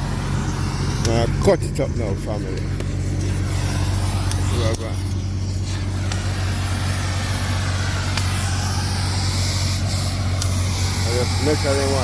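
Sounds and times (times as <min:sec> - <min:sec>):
heavy machine engine running: 0:00.0 - 0:12.0
sharp clicks: 0:10.4 - 0:10.6.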